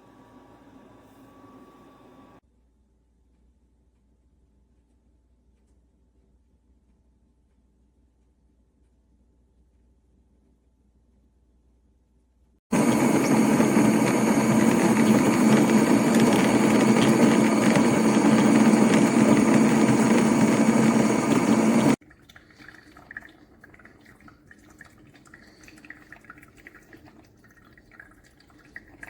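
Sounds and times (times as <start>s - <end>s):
coffee maker grinder running: 12.7s - 22.0s
faint dripping: 22.0s - 29.0s.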